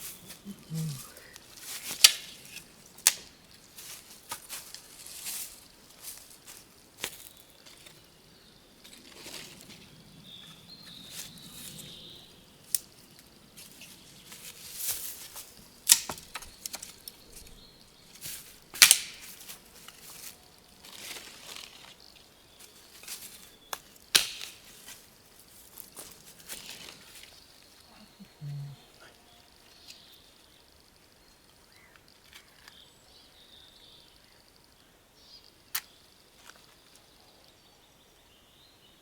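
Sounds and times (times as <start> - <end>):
rustling: 0.0 - 8.1, 10.8 - 29.0
dry twigs cracking: 0.0 - 8.2, 10.8 - 28.2.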